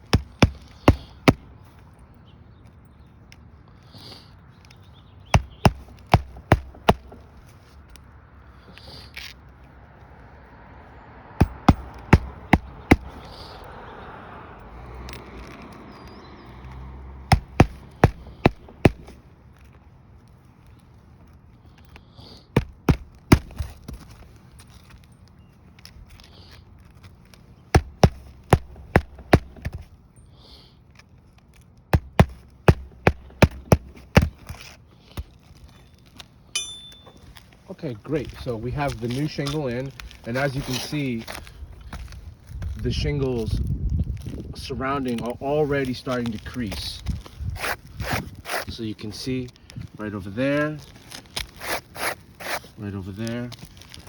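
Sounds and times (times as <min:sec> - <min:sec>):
hammer driving nails: 0:05.4 - 0:07.2, 0:11.4 - 0:13.2, 0:17.3 - 0:19.2, 0:27.8 - 0:29.8, 0:32.0 - 0:34.5.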